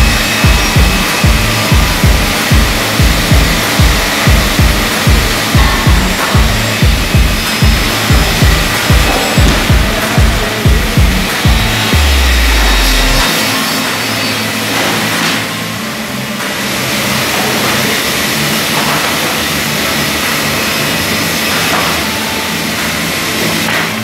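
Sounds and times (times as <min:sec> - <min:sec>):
loud deep rumble: 0:00.0 - 0:13.3
saws running: 0:00.0 - 0:24.0.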